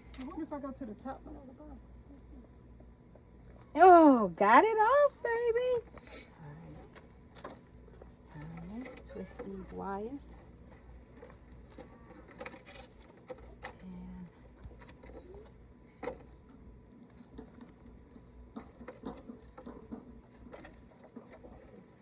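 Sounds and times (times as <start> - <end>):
clicks and rustling of wires: 0.0 - 0.4, 6.7 - 22.0.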